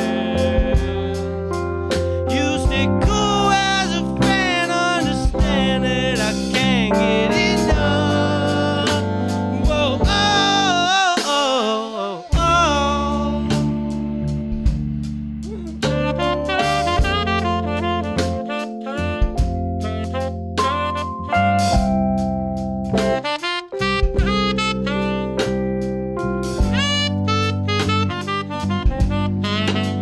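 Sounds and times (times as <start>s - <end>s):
sliding wavering lead melody: 0.0s - 10.9s, 12.5s - 22.9s
live jazz band playing: 0.0s - 11.6s, 12.3s - 30.0s.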